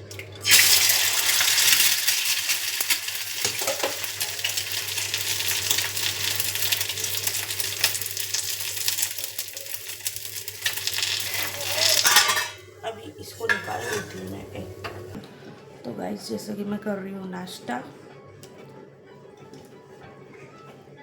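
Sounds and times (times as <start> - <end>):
egg sizzling in hot oil: 0.4 - 12.5.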